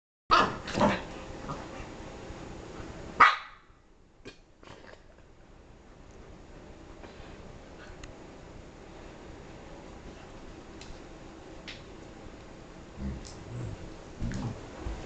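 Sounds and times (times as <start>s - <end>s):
dog barking: 3.2s - 3.7s.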